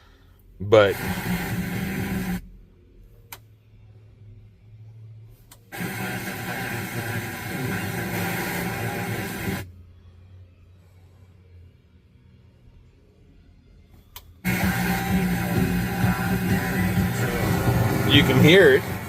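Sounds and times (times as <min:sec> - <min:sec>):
loud radio static: 0:00.7 - 0:02.4, 0:05.8 - 0:09.6, 0:14.5 - 0:19.0.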